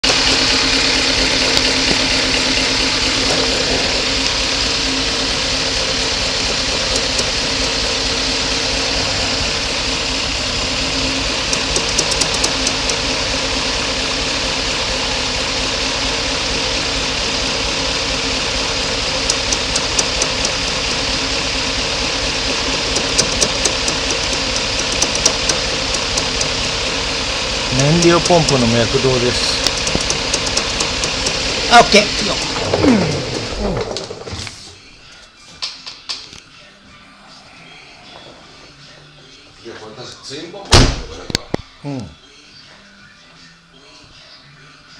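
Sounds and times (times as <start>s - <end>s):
fuel pump pulsing hum: 0.0s - 34.8s
rapid ticking: 6.4s - 7.4s, 11.4s - 13.0s, 19.2s - 20.7s, 22.7s - 26.8s, 27.7s - 33.5s.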